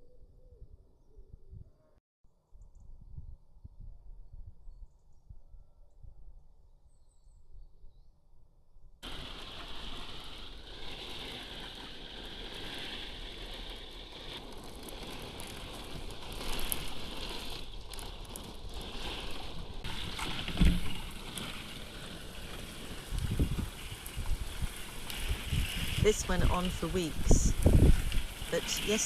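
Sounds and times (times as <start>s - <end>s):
wind: 0.0s - 29.0s
rain pouring down: 9.0s - 29.0s.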